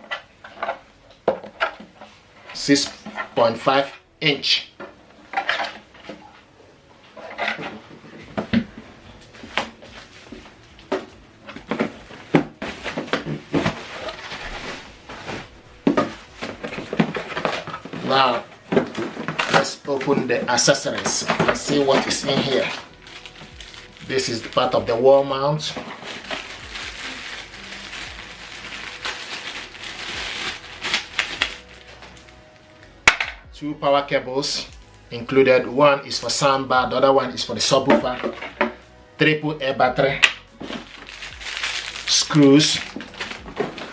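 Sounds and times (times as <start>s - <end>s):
packaging rustling: 7.1s - 33.3s, 40.0s - 43.9s.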